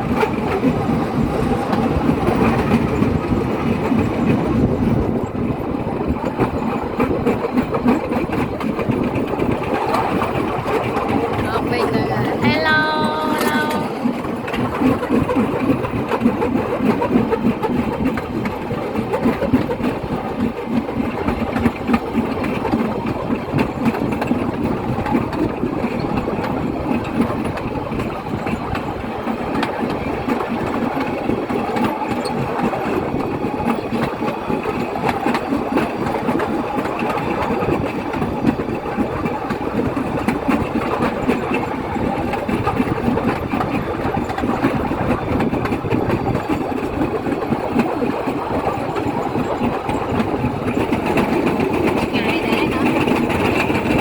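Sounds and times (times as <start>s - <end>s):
engine running steadily: 0.0s - 54.0s.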